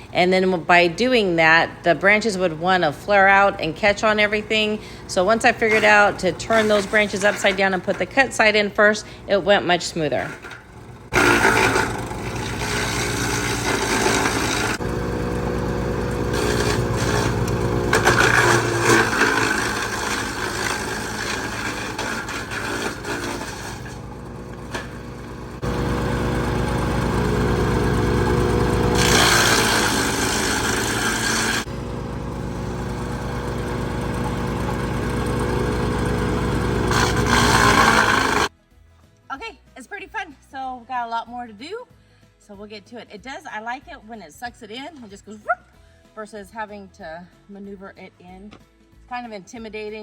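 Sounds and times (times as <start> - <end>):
wood chipper engine running: 1.4 - 38.5.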